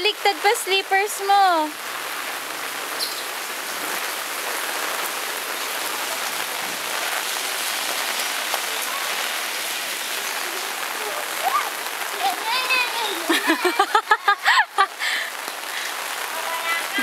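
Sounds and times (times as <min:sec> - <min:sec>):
steady rain hiss: 0:00.0 - 0:17.0
raindrop ticks: 0:07.9 - 0:17.0.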